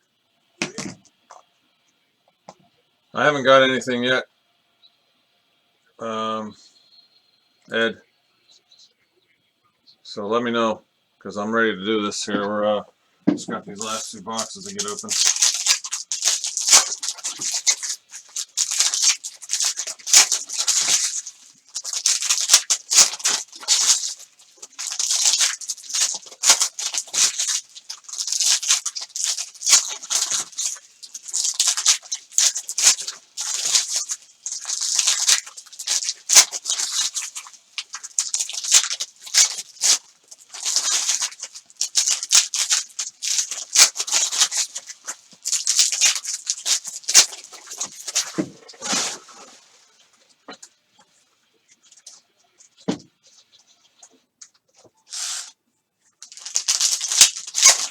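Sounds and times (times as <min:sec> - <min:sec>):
card pack wrappers crinkling and tearing: 0:13.7 - 0:50.0, 0:56.2 - 0:57.9.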